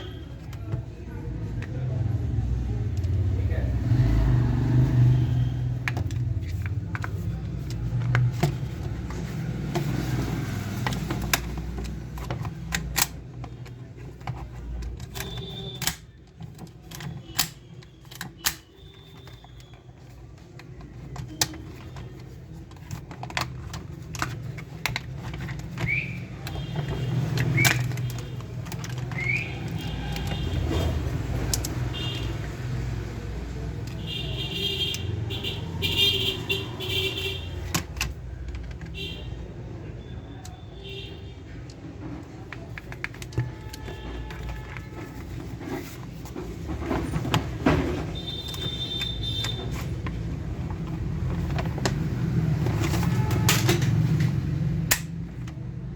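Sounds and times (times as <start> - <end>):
low traffic rumble: 0.0 - 55.9
plastic toy parts clicking: 5.7 - 32.5, 41.6 - 46.3, 54.8 - 55.6.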